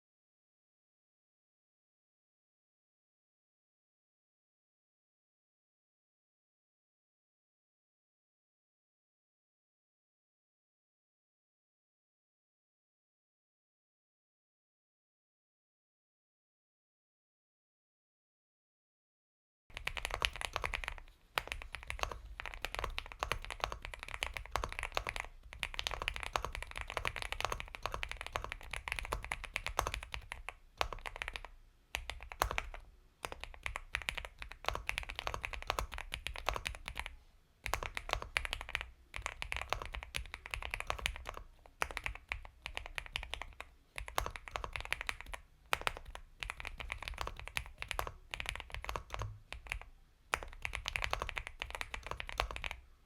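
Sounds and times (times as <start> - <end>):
mechanical keyboard typing: 19.7 - 52.8.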